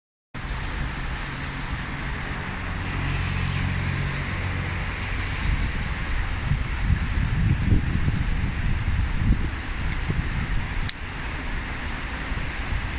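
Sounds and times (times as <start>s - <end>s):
low rumbling: 0.4s - 10.9s
low engine hum: 0.4s - 12.9s
rain falling: 0.4s - 12.9s.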